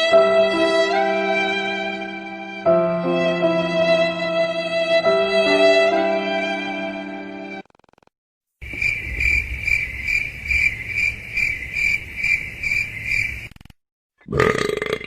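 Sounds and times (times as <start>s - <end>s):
cricket chirping: 8.6s - 13.6s.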